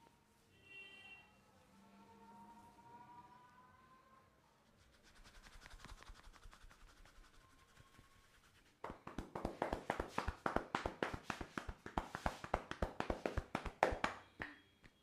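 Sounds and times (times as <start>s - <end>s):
hands slapping in massage: 5.4s - 7.3s, 8.6s - 15.0s.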